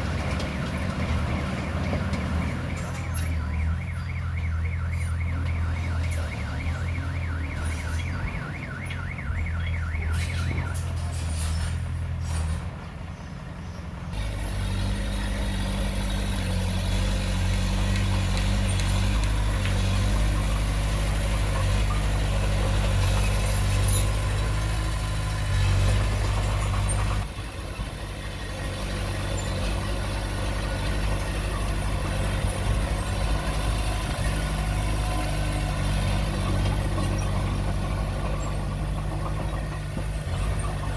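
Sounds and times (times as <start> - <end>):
warbling reverse alarm beeping: 0.4 - 10.8
heavy diesel engine running: 14.2 - 40.9.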